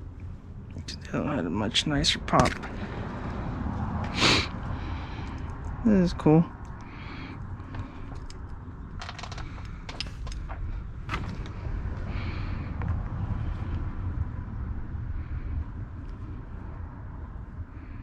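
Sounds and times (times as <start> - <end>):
steady low rumble: 0.0 - 18.0
sharp clicks and taps from handling: 2.4 - 2.8.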